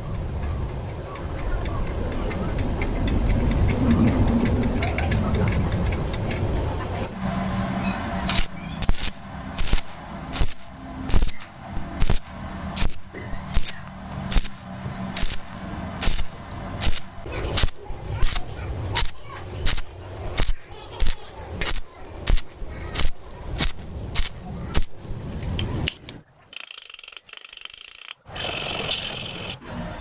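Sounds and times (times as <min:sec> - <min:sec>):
arc welding bursts: 0:07.1 - 0:24.9, 0:27.6 - 0:29.7
steady welding hiss: 0:07.1 - 0:24.9, 0:28.3 - 0:29.6.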